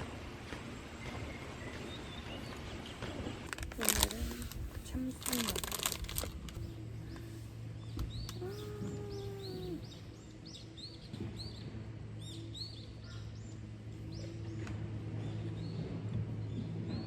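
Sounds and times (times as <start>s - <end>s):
soft background music: 0.0s - 17.0s
small birds chirping: 1.0s - 14.6s.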